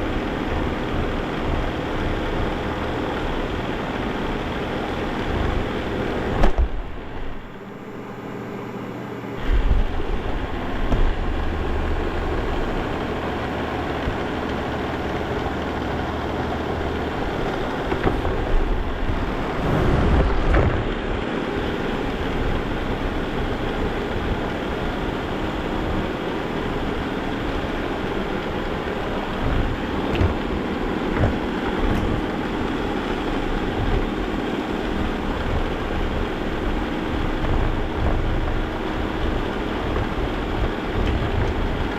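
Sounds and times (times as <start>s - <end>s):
vacuum cleaner running: 0.0s - 41.9s
knocks and bumps: 28.7s - 34.2s.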